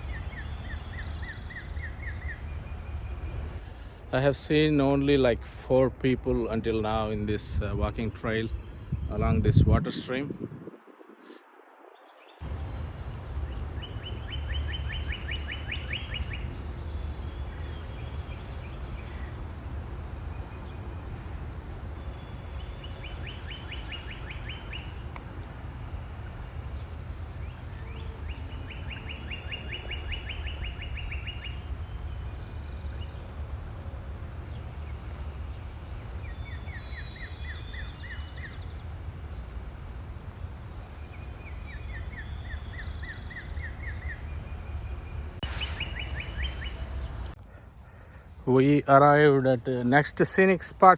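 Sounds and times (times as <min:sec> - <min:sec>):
songbird trilling: 0:00.0 - 0:03.6, 0:12.4 - 0:47.4
steady low rumble: 0:00.0 - 0:03.6, 0:12.4 - 0:47.4.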